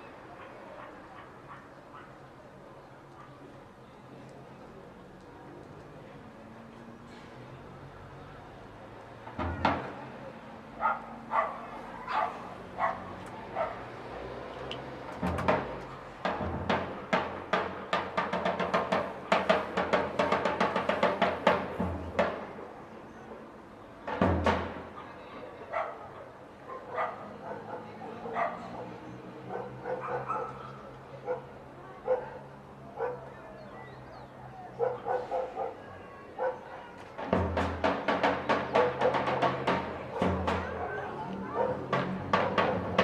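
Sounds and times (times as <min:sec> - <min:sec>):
dog barking: 0:10.8 - 0:13.9, 0:25.7 - 0:28.8, 0:29.5 - 0:33.4, 0:34.8 - 0:36.9, 0:40.7 - 0:41.8.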